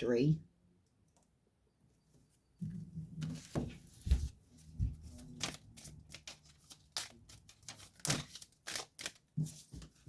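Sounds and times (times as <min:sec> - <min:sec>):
cards riffling and snapping: 0:05.3 - 0:09.4.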